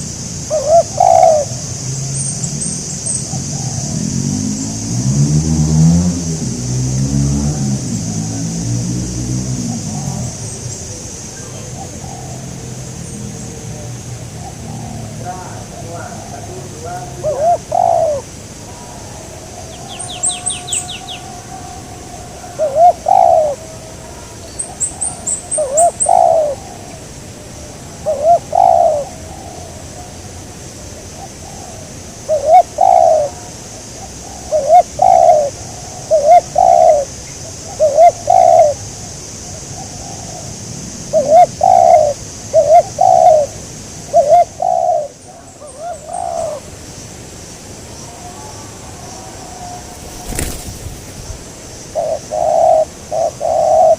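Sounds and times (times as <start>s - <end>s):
dove cooing: 0.0s - 4.0s, 9.6s - 30.1s, 31.1s - 38.9s, 41.1s - 46.7s, 49.2s - 53.9s
small bird chirps: 19.7s - 21.2s.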